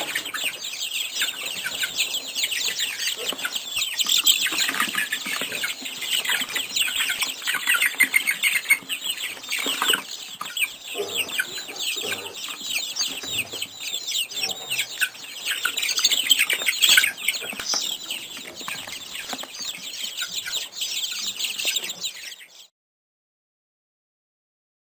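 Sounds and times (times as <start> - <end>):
chorus of small birds chirping: 0.0 - 22.7.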